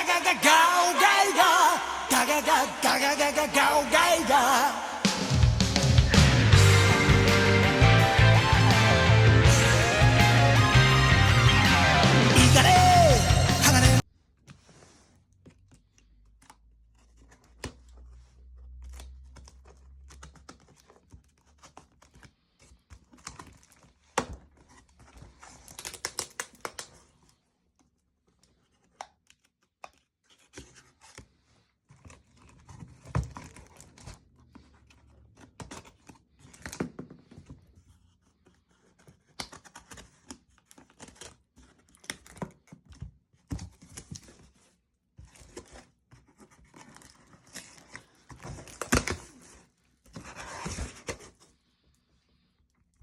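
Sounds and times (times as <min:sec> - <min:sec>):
cardboard clicks and scrapes: 0:14.4 - 0:51.6
paper and plastic tearing and crinkling: 0:14.4 - 0:51.6.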